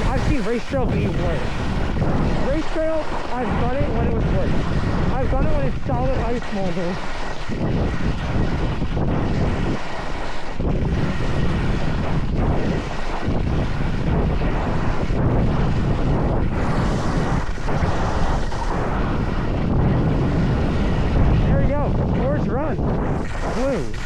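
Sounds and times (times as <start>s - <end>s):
skis scraping over icy snow: 0.0s - 8.6s
wind buffeting microphone: 0.0s - 24.0s.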